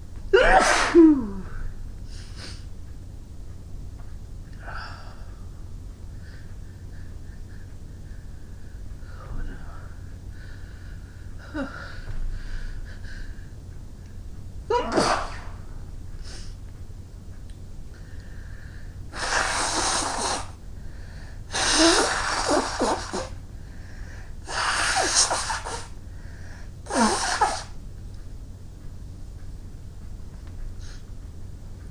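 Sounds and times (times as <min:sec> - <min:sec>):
woman sneezing: 0:00.4 - 0:01.6, 0:14.7 - 0:15.7, 0:26.9 - 0:27.7.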